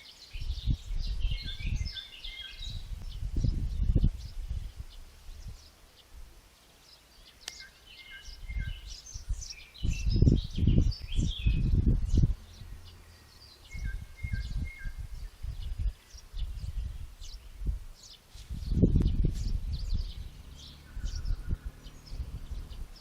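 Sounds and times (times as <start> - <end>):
songbirds chirping and calling: 0.0 - 23.0
low rumbling bursts: 9.9 - 15.8, 18.6 - 23.0.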